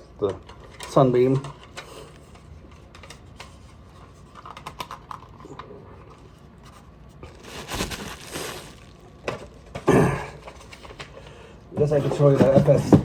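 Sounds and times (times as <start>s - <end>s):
rustling: 6.6s - 9.6s.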